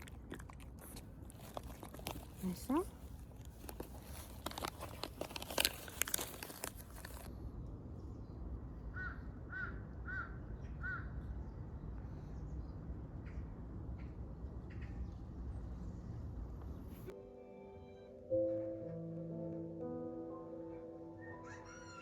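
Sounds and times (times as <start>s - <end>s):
crinkling and clicking: 0.0s - 7.3s.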